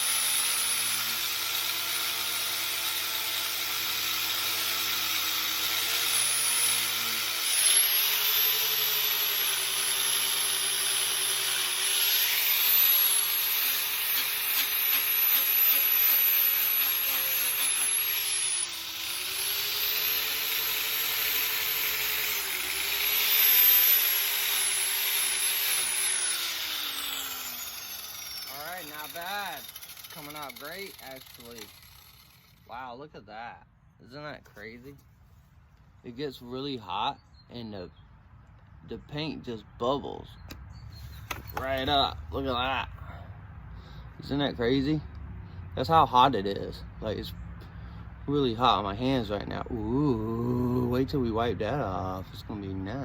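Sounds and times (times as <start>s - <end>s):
angle grinder grinding metal: 0.0s - 33.0s, 41.2s - 42.8s.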